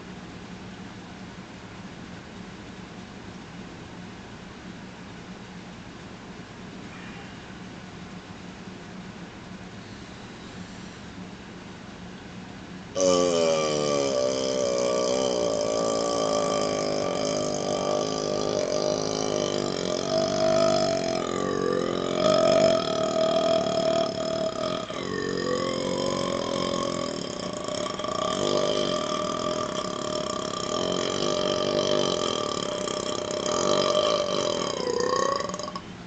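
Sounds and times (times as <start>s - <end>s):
man burping: 13.0s - 35.8s
man belching: 13.0s - 35.9s.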